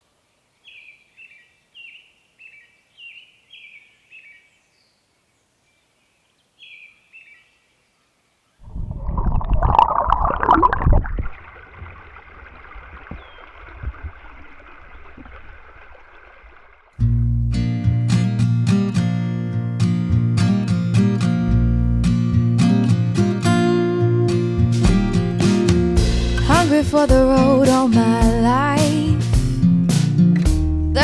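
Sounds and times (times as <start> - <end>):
river water flowing: 10.6 - 17.0
bird falling call: 11.7 - 16.3.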